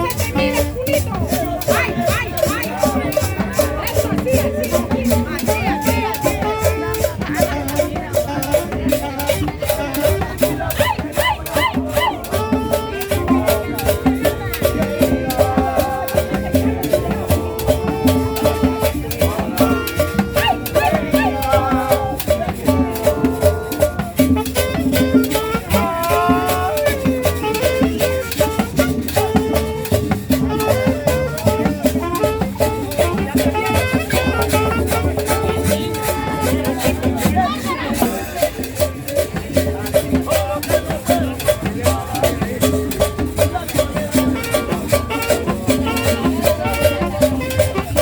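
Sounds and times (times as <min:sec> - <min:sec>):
latin dance music: 0:00.0 - 0:48.0.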